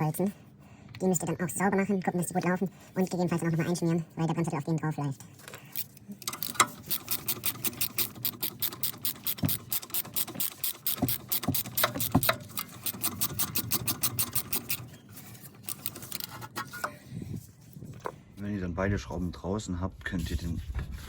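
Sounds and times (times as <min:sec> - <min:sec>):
ratchet clicking: 0:06.2 - 0:14.8, 0:15.6 - 0:16.3.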